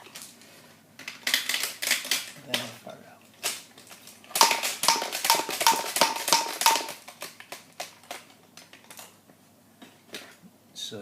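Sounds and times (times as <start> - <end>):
marbles landing and rolling: 4.3 - 8.1
toy marble shooter clicks: 4.4 - 8.2.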